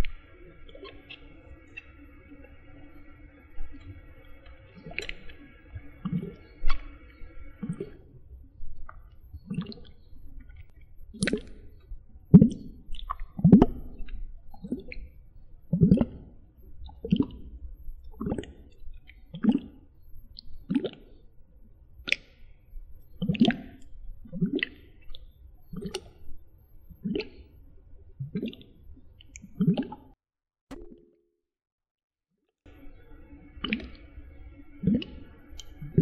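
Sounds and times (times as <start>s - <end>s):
wet squishing sounds: 3.7s - 8.0s, 8.8s - 21.2s, 22.0s - 26.3s, 26.9s - 30.2s, 33.5s - 34.2s, 34.8s - 36.0s.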